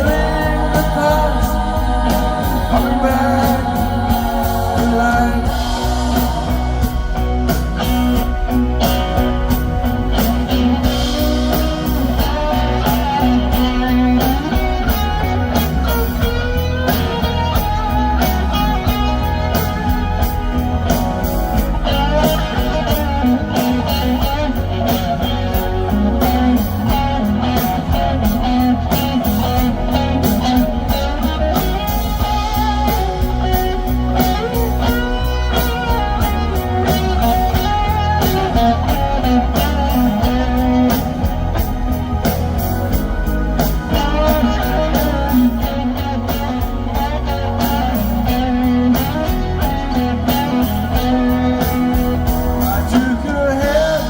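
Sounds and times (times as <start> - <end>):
drums and bass: 0.0 - 54.0
electric guitar lead: 0.0 - 54.0.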